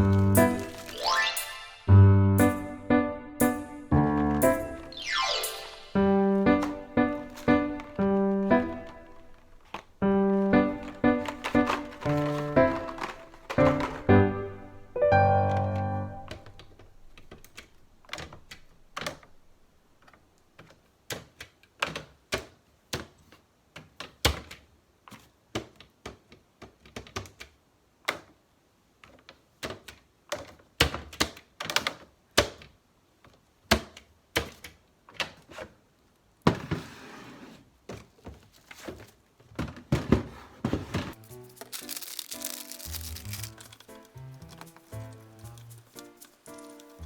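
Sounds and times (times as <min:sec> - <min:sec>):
household objects clicking and knocking: 0:03.9 - 0:05.0, 0:05.8 - 0:14.9, 0:37.9 - 0:47.0.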